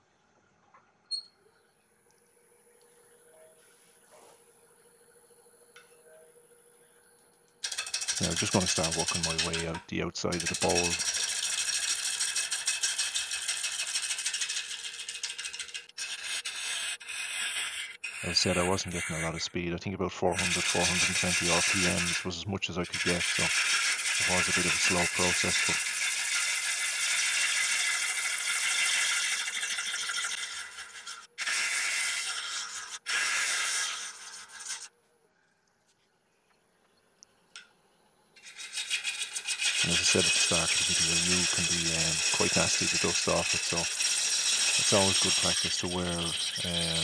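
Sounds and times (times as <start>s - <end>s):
lathe tool rattling on wood: 7.6s - 19.4s, 20.3s - 31.6s, 38.4s - 47.0s.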